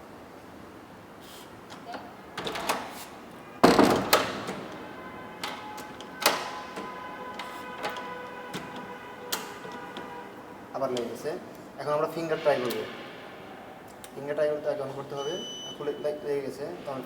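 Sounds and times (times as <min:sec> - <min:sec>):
door lock clicks: 0:03.6 - 0:04.8, 0:05.4 - 0:10.1
latch and handle clunk: 0:03.6 - 0:04.8, 0:05.4 - 0:10.1
electronic tone from lock: 0:15.1 - 0:16.0.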